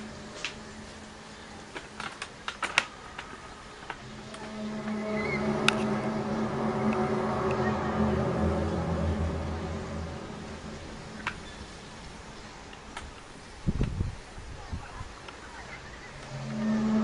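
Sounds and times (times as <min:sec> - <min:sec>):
low steady drone: 0:00.0 - 0:02.1, 0:03.5 - 0:13.5, 0:15.9 - 0:17.0.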